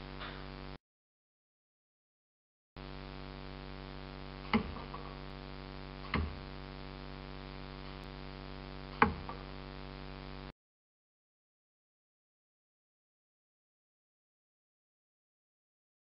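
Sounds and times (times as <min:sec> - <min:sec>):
electrical hum: 0:00.0 - 0:00.8, 0:02.8 - 0:10.5.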